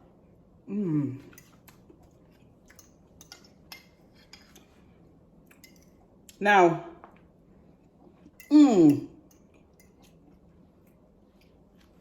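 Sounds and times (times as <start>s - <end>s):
cutlery clinking against a dish: 2.6s - 4.7s, 5.5s - 6.0s, 8.3s - 10.2s.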